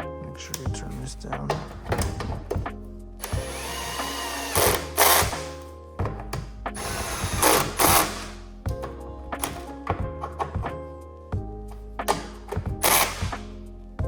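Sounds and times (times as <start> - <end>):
background music: 0.0 - 14.0
power drill driving bolts: 3.2 - 5.6, 6.8 - 8.4, 12.1 - 13.4.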